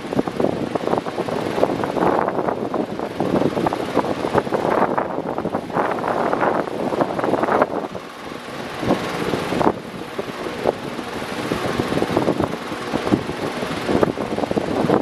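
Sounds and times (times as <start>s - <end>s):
electric fan running: 0.0s - 15.0s.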